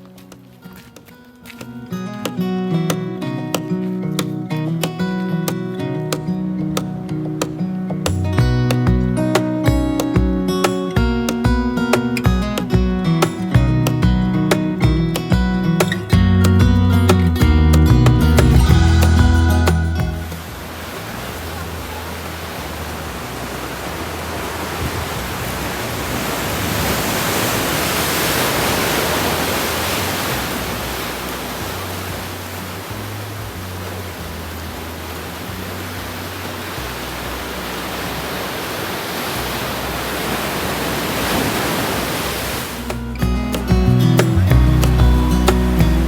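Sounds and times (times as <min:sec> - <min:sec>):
music: 0:00.0 - 0:20.8, 0:42.9 - 0:46.0
surf washing on rocky shore: 0:18.4 - 0:46.0.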